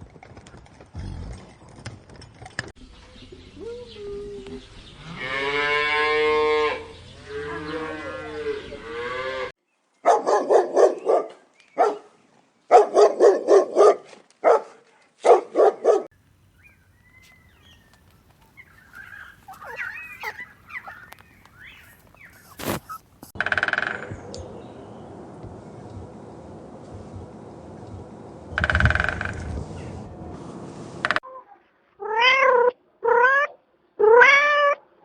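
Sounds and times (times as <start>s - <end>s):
cow mooing: 5.0s - 9.5s
dog barking: 10.0s - 12.1s, 12.7s - 16.1s, 18.4s - 23.0s
faint high chirping: 16.3s - 23.4s.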